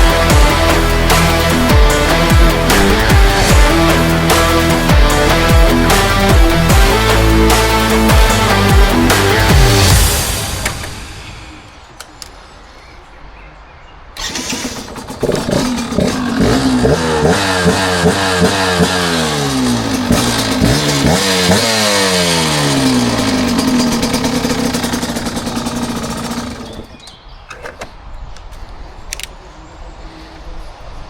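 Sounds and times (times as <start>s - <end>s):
motorcycle accelerating through gears: 0.0s - 10.4s, 14.2s - 27.0s.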